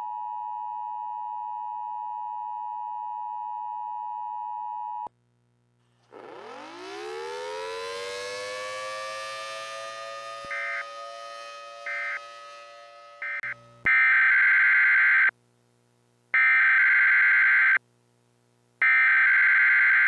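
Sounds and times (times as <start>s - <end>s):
warning siren winding up: 6.0s - 15.3s
steady high tone: 10.2s - 13.6s.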